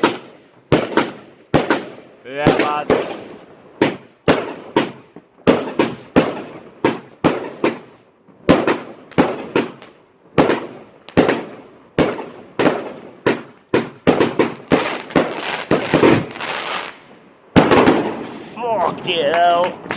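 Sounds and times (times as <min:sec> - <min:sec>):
firework cake sharp bangs: 0:00.0 - 0:19.9.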